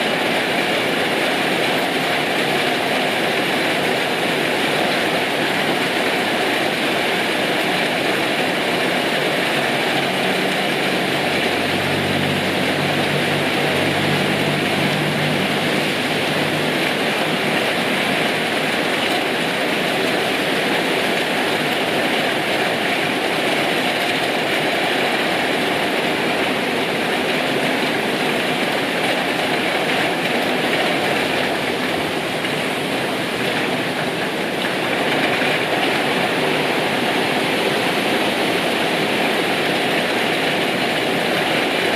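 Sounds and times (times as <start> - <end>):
heavy rain falling: 0.0 - 41.9
low engine-like hum: 10.1 - 18.4.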